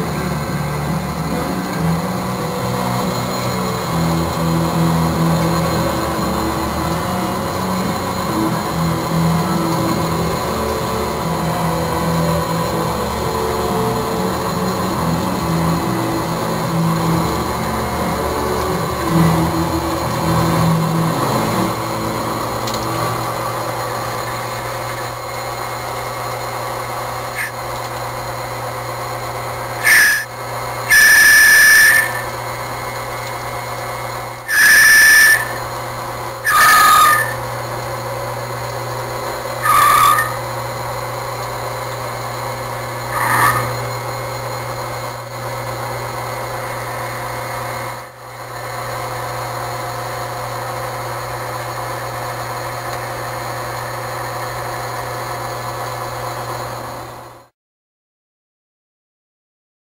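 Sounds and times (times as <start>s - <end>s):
high-pitched squeals: 0.0s - 25.7s, 27.2s - 27.6s, 29.8s - 33.0s, 33.6s - 37.7s, 39.2s - 40.8s, 42.4s - 48.1s
lathe humming: 0.0s - 57.4s.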